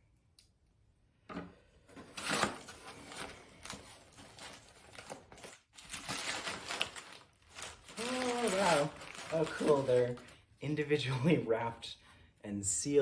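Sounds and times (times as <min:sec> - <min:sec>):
package wrapping tearing and crinkling: 0:02.0 - 0:10.4.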